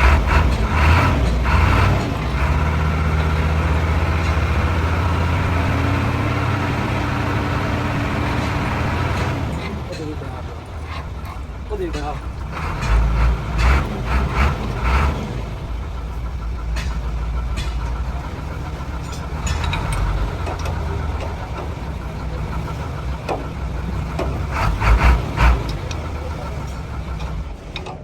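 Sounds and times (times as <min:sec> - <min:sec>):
vehicle engine idling: 0:00.0 - 0:28.0.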